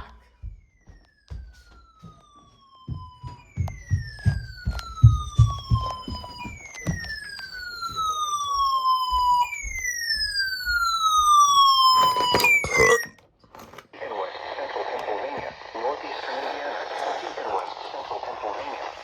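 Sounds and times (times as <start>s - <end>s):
electronic siren-like falling tone: 0.4s - 13.2s
low thumps and knocks: 2.9s - 7.2s.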